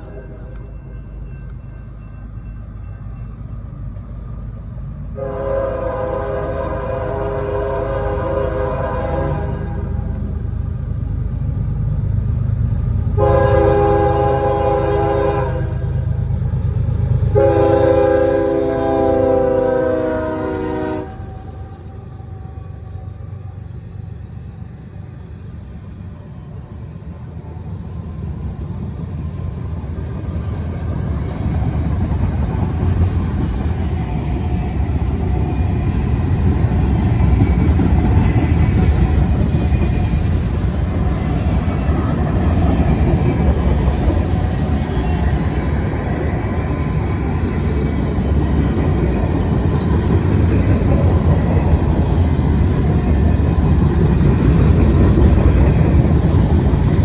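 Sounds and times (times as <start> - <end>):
passing train rumble: 0.0 - 57.0
train horn: 5.2 - 10.2, 13.2 - 16.0, 17.3 - 23.2.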